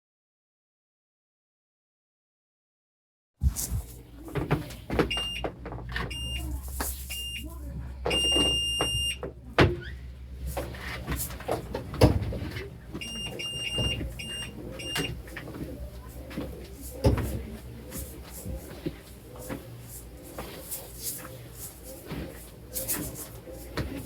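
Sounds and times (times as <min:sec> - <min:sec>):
appliance beeping: 0:05.0 - 0:10.1, 0:11.5 - 0:17.9.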